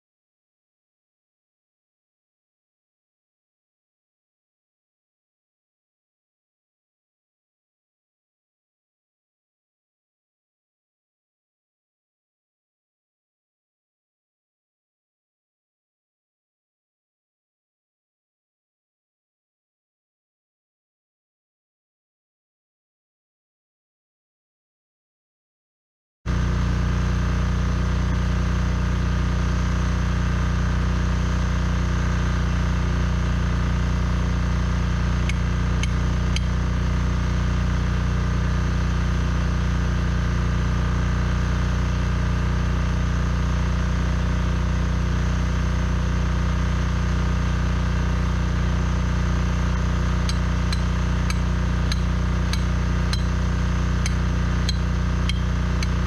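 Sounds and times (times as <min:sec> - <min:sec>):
steady machine hum: 0:31.7 - 0:38.6, 0:48.1 - 0:56.0
light ticks: 0:50.3 - 0:53.3.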